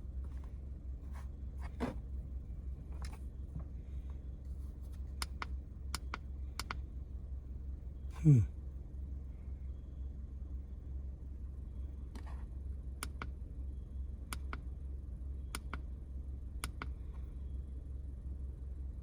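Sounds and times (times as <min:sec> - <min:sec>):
steady low hum: 0:00.0 - 0:19.0
brief falling sigh: 0:08.2 - 0:08.5.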